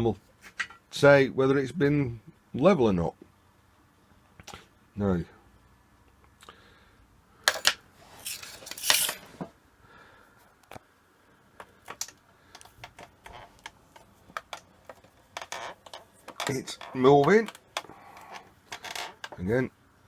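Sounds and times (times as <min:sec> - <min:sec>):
metal parts clicking and scraping: 0:07.5 - 0:09.3.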